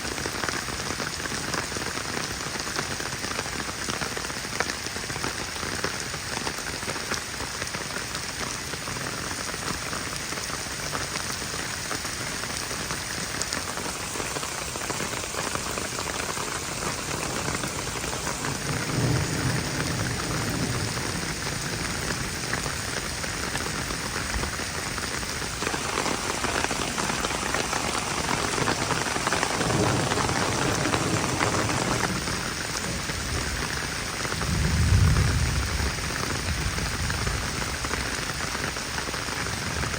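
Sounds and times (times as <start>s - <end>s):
heavy rain falling: 0.0s - 39.9s
low rumbles of thunder: 16.9s - 24.6s, 25.7s - 38.0s.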